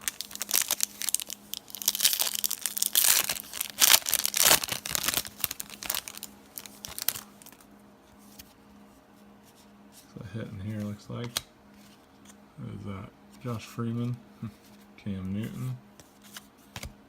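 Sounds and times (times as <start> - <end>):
foil wrapper tearing and crinkling: 0.0 - 7.6.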